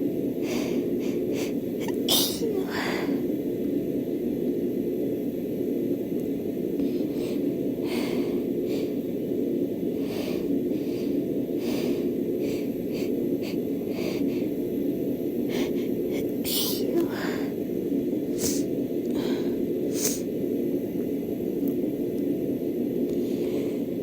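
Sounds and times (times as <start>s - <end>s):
low background hum: 0.0s - 24.0s
woman breathing and sniffing: 0.4s - 3.2s, 6.8s - 9.1s, 9.9s - 17.6s, 18.3s - 20.3s, 23.1s - 24.0s
woman sneezing: 1.8s - 3.0s, 16.2s - 17.2s.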